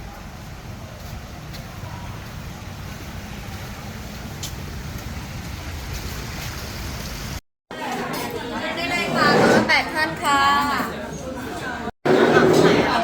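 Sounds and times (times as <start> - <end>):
moving vehicle rumble: 0.0 - 7.4.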